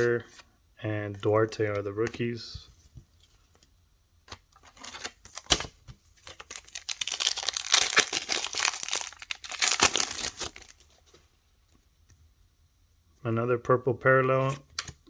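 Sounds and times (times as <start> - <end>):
wrapper tearing and crinkling: 4.7 - 11.0.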